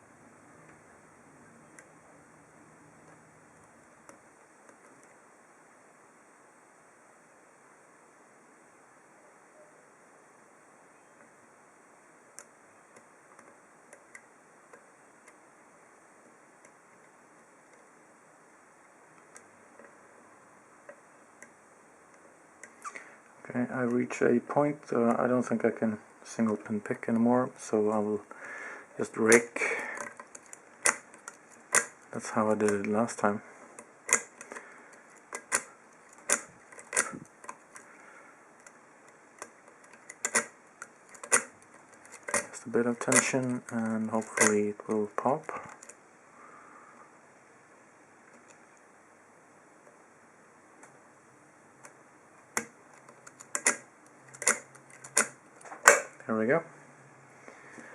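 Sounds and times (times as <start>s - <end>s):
steady low hiss: 0.0s - 57.9s
lock pick clicking in padlock: 30.1s - 31.1s, 34.1s - 34.5s, 35.3s - 37.3s, 39.4s - 40.5s, 41.1s - 42.5s, 52.6s - 56.1s.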